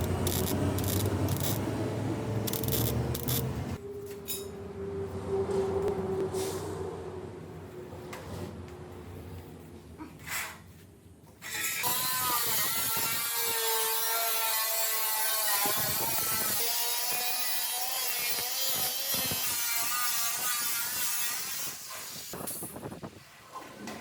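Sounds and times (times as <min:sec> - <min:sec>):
power grinder grinding metal: 0:00.0 - 0:01.7, 0:02.4 - 0:03.6, 0:11.6 - 0:21.9.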